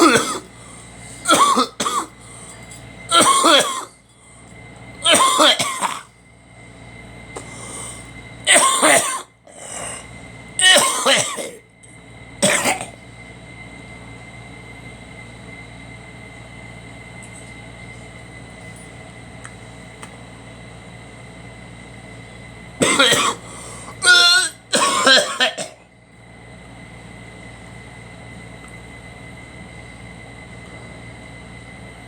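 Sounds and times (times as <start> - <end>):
person coughing: 0.0 - 4.0, 5.0 - 6.1, 7.4 - 11.6, 12.4 - 13.0, 22.8 - 25.9
steady background hum: 0.0 - 32.0.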